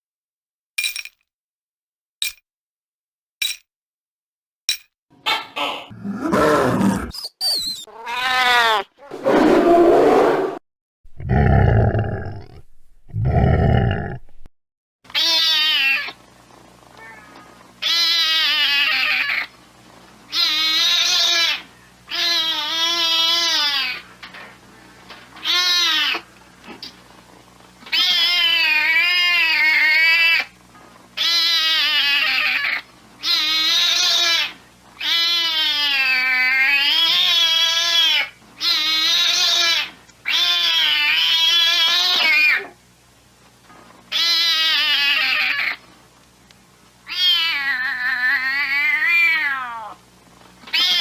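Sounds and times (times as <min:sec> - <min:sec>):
cat yowling: 0:07.9 - 0:09.0, 0:44.1 - 0:45.8, 0:47.1 - 0:50.0, 0:50.7 - 0:51.0.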